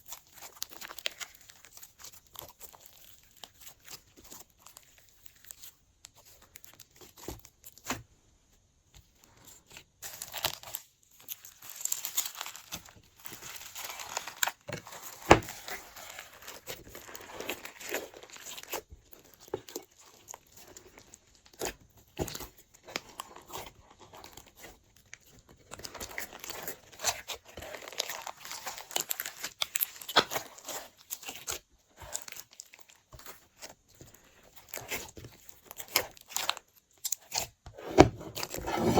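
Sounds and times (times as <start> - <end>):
hands squishing sticky slime: 9.0 - 37.6.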